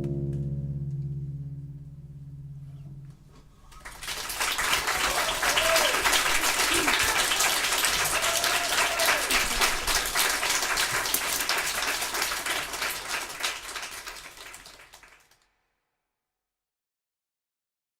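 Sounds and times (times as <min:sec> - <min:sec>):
audience applauding: 0:03.7 - 0:15.4.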